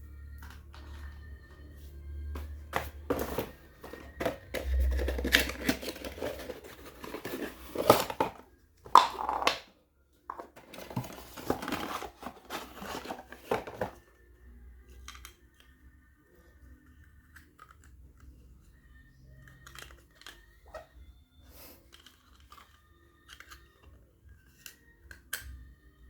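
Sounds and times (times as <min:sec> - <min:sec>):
packaging crinkling and rustling: 0:03.0 - 0:08.4, 0:10.3 - 0:14.0.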